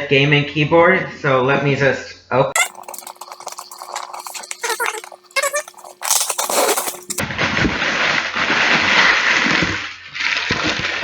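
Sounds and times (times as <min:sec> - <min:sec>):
cardboard packaging rustling: 0:02.6 - 0:07.2.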